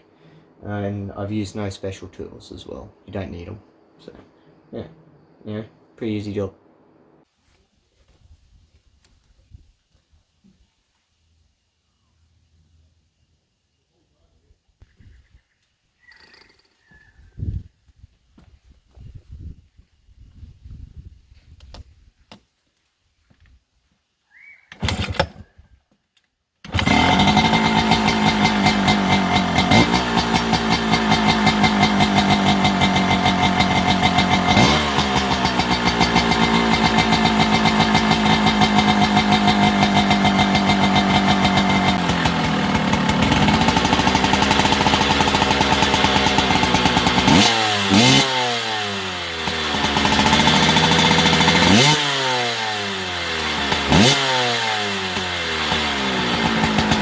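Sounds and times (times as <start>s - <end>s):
dirt bike engine revving: 26.7s - 57.0s.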